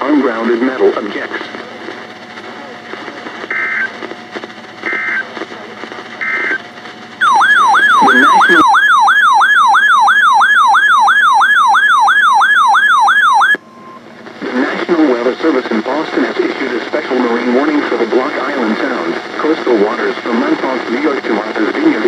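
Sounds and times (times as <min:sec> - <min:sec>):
digital data tone bursts: 0:07.2 - 0:08.7
electronic siren yelping: 0:07.2 - 0:14.0.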